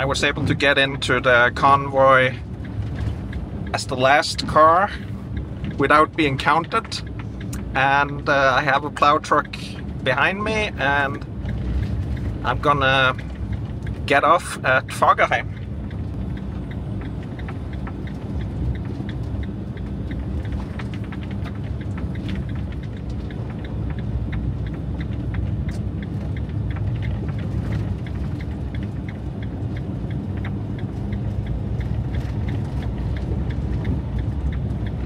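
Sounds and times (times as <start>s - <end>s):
engine and tyres rumbling: 0.0s - 35.0s
small irregular ticks: 10.7s - 35.0s.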